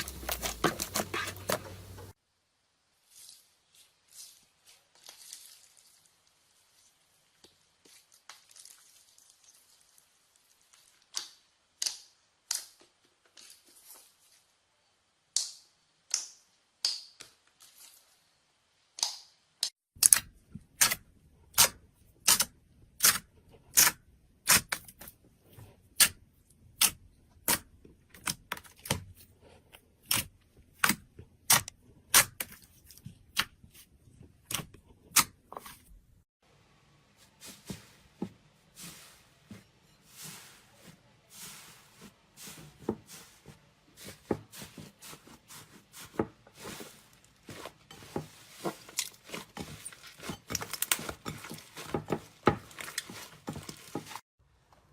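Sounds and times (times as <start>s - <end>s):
sticky slime squelches: 37.1s - 54.2s.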